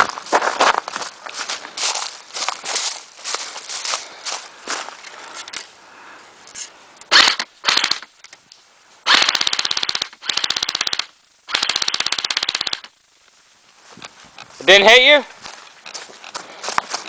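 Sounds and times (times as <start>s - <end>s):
airsoft gun firing bursts: 7.1s - 8.1s, 9.0s - 12.9s.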